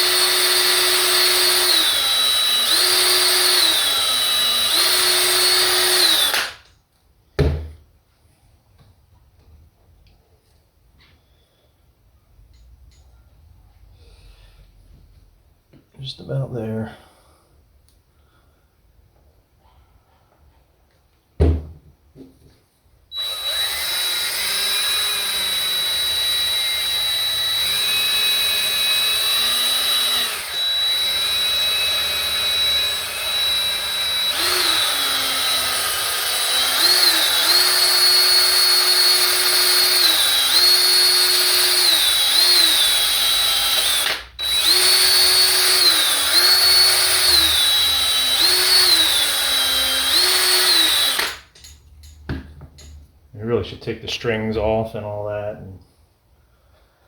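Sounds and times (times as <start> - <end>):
power tool motor whining: 0.0 - 6.6, 23.2 - 51.4.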